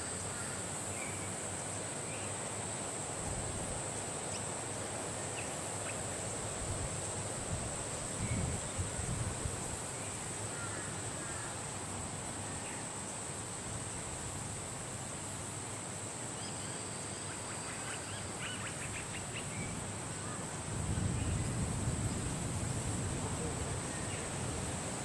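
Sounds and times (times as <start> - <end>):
low wind rumble: 6.5 - 9.9, 20.6 - 25.0.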